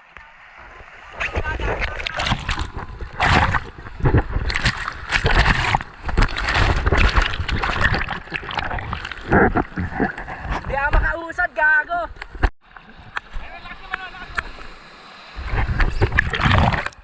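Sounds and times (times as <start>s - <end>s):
sea water splashing in surf: 0.4s - 11.0s, 12.9s - 17.0s.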